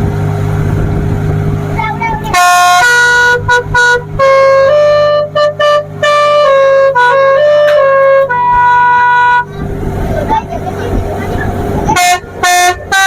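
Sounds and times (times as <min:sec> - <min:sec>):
steady low hum: 0:00.7 - 0:06.8
multi-tone air horn playing: 0:01.6 - 0:09.5, 0:11.8 - 0:13.0.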